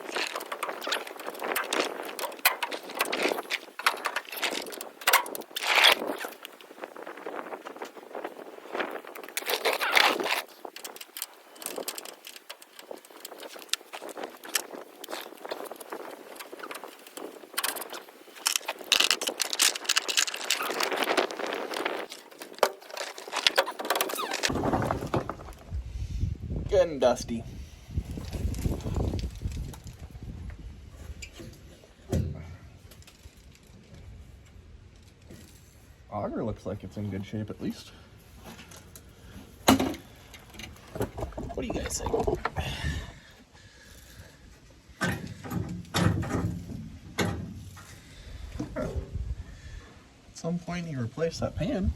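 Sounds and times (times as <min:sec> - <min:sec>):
debris crackling: 0:00.0 - 0:25.9.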